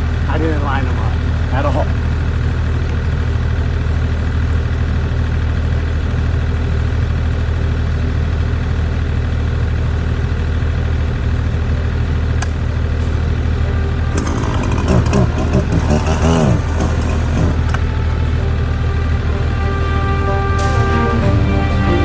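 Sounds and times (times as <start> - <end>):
engine idling: 0.0 - 22.0.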